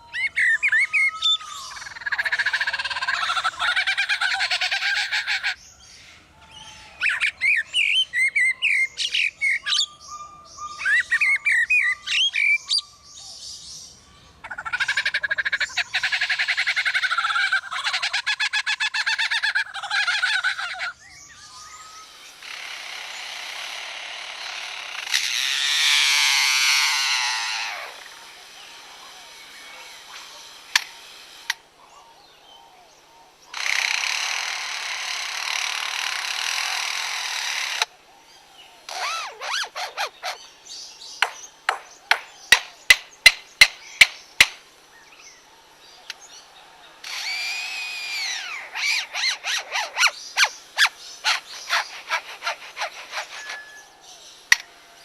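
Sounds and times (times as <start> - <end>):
bird mimicking power tool whirring: 0.0 - 13.2, 14.4 - 55.0
bird whine rising and falling: 19.3 - 31.5, 47.0 - 54.0
bird mimicking hammer knocks: 41.2 - 44.6.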